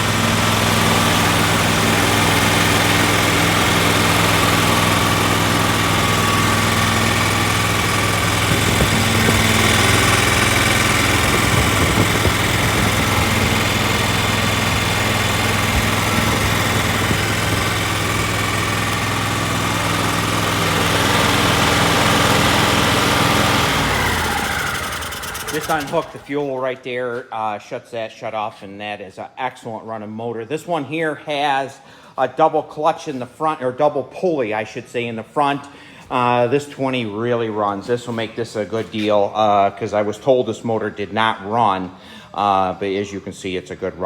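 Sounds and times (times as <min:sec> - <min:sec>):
engine running steadily: 0:00.0 - 0:26.2.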